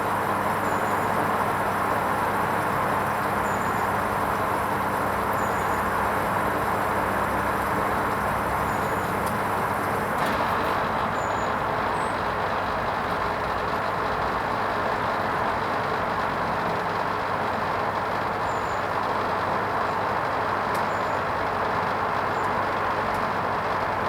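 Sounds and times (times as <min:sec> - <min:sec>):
washing machine running: 0:00.0 - 0:13.0.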